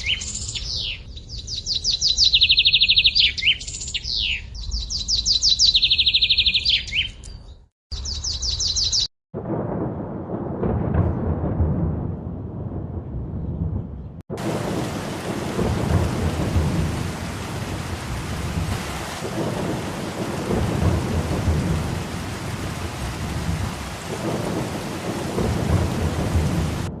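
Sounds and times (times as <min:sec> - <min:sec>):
thunder rumbling: 0:09.4 - 0:27.0
heavy rainfall: 0:14.3 - 0:27.0.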